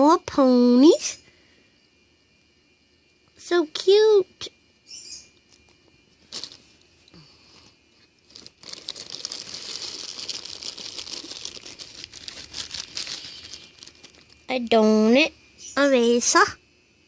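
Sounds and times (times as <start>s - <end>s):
packaging crinkling: 5.5s - 6.7s, 8.2s - 14.5s.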